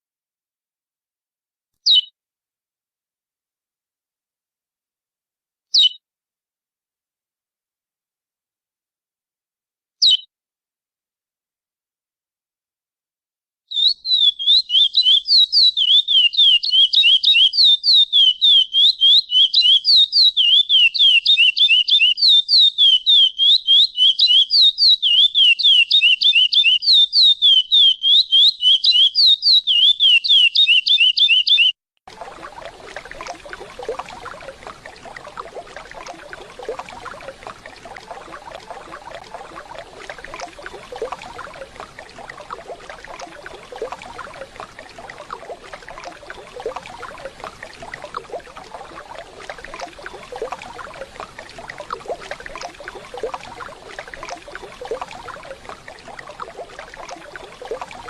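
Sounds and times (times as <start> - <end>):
finch sharp high chirps: 1.8 - 2.1.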